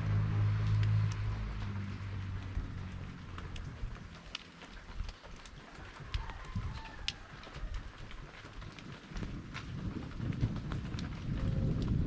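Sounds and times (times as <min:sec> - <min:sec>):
low hum: 0:00.0 - 0:05.2
water dripping: 0:00.0 - 0:07.3.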